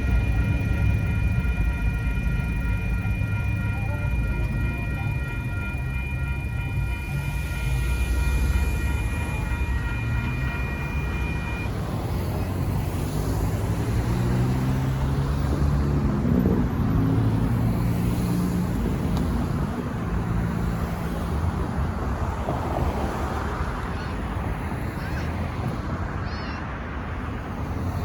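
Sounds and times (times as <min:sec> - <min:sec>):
heavy vehicles passing: 0:00.0 - 0:28.0.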